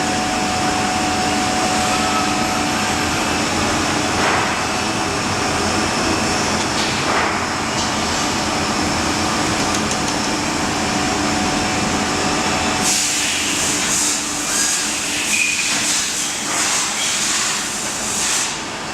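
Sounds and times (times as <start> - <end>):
running machine with hissing: 0.0 - 18.9.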